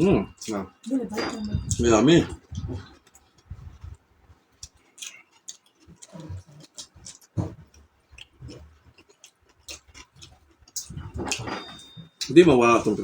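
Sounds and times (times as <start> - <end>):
chewing with wet mouth clicks: 4.6 - 11.5.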